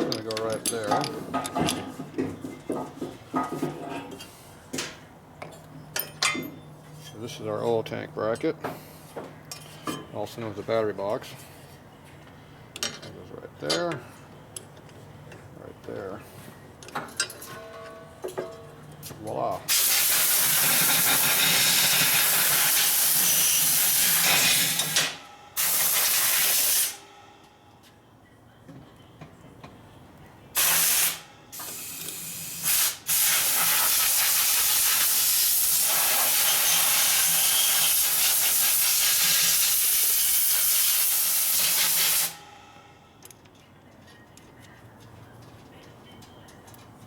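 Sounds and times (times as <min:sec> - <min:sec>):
pressurized spray hissing: 0:19.7 - 0:24.3, 0:30.6 - 0:42.4.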